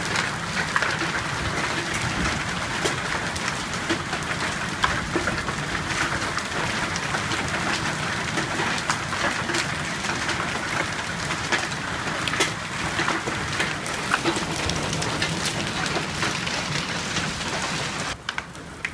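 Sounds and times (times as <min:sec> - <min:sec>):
hailstones clicking on hard surfaces: 0:00.0 - 0:18.9
heavy rain patter: 0:00.0 - 0:18.9.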